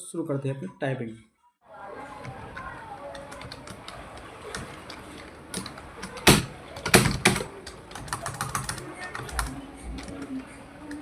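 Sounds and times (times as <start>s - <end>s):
typing on computer keyboard: 2.5s - 11.0s.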